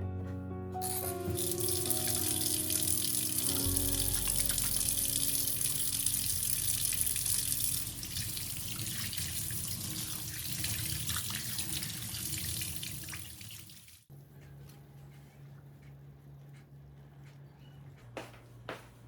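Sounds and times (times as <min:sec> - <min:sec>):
tap water running into sink: 0:00.8 - 0:14.0.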